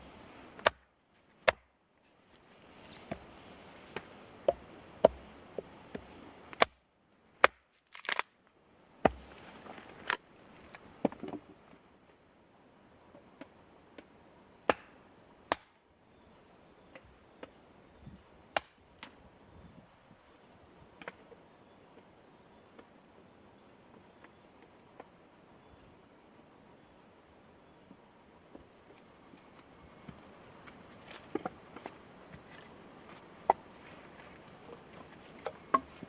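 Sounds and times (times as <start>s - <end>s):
faint hiss: 0.0s - 1.4s, 2.0s - 7.3s
sharp cracks and knocks: 0.6s - 1.7s, 7.4s - 8.4s, 14.7s - 15.8s, 18.6s - 19.2s.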